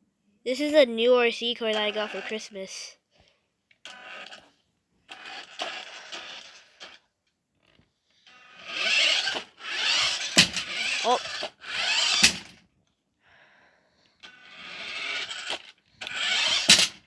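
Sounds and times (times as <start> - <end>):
toy car electric motor whirring: 1.6 - 2.9, 3.8 - 12.7, 14.0 - 17.0.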